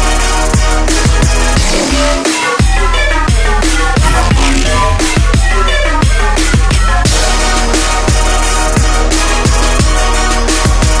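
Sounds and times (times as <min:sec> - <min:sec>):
electronic dance music: 0:02.1 - 0:07.5.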